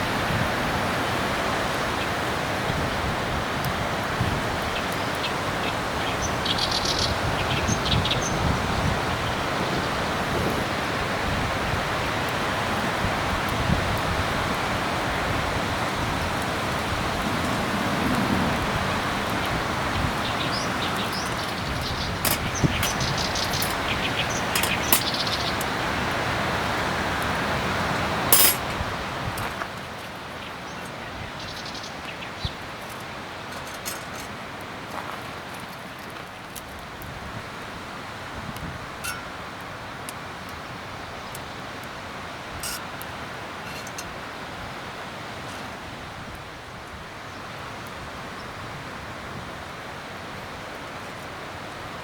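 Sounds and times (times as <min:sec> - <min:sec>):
steady rushing outdoor noise: 0:00.0 - 0:52.0
campfire crackling and popping: 0:19.0 - 0:31.0
small bird chirping: 0:19.9 - 0:26.0.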